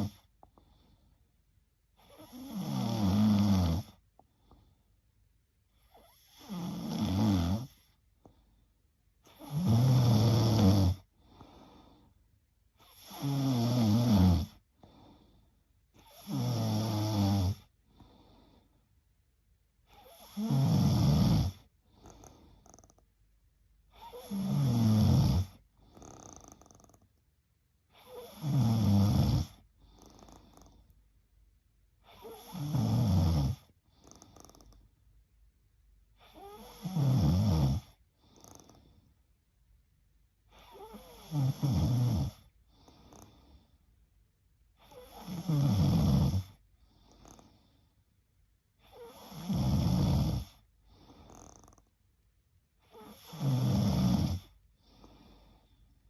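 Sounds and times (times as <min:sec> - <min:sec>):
woman snoring: 0:00.0 - 0:00.3, 0:02.0 - 0:04.0, 0:05.8 - 0:07.9, 0:09.3 - 0:11.1, 0:12.8 - 0:14.6, 0:16.0 - 0:17.7, 0:19.9 - 0:23.0, 0:23.9 - 0:27.0, 0:27.9 - 0:30.8, 0:32.0 - 0:34.8, 0:36.2 - 0:38.9, 0:40.5 - 0:43.5, 0:44.8 - 0:47.6, 0:48.8 - 0:51.9, 0:52.8 - 0:55.5
faint breathing: 0:00.2 - 0:02.3, 0:04.1 - 0:06.2, 0:07.8 - 0:09.5, 0:11.0 - 0:12.9, 0:14.6 - 0:16.2, 0:17.6 - 0:19.1, 0:21.5 - 0:23.1, 0:42.4 - 0:44.1, 0:50.4 - 0:51.9, 0:54.4 - 0:56.0.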